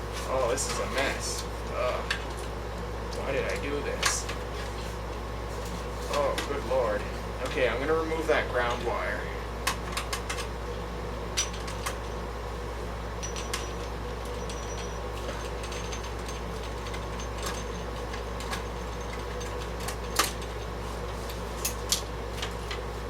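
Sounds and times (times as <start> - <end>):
tools clicking on metal parts: 9.6 - 10.5, 11.4 - 12.2, 13.2 - 20.7, 21.3 - 22.8.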